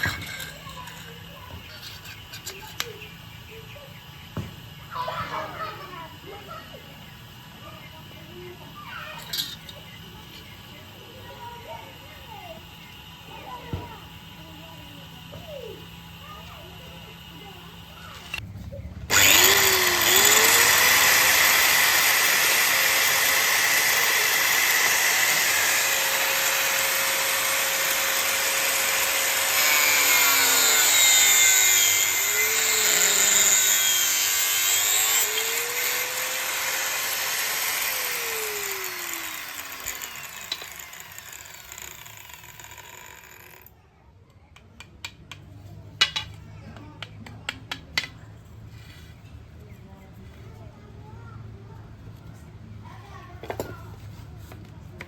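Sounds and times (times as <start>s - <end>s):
power tool motor whining: 19.1s - 43.7s.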